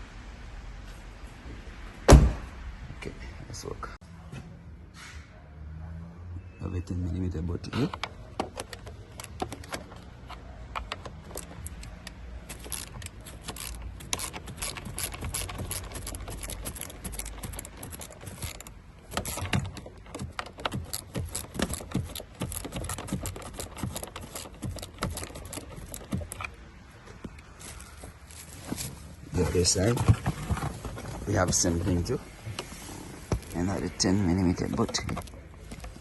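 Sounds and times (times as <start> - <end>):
ratchet wrench clicking: 10.8 - 26.5.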